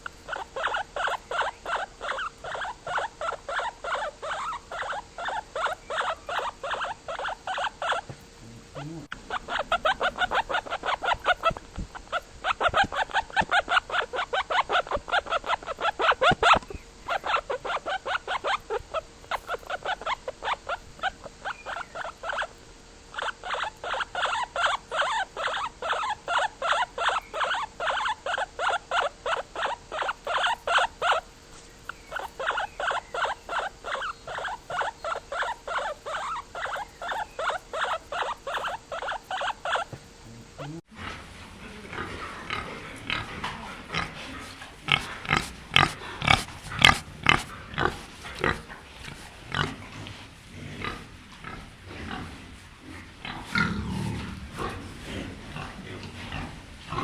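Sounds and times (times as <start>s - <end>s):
noisier animal sound: 0.0s - 57.0s.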